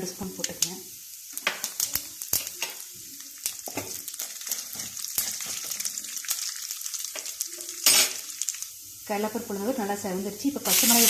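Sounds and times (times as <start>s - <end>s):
lentils sizzling in hot oil: 0.0s - 11.0s
stirring in a pan: 1.4s - 8.7s.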